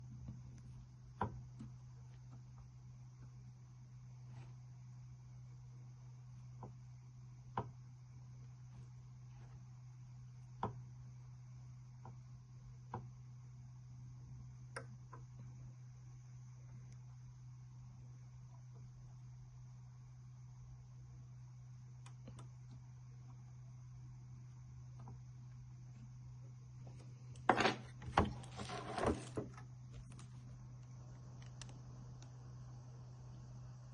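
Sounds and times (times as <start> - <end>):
steady low hum: 0.0 - 33.9
scraping and knocking: 27.5 - 29.6.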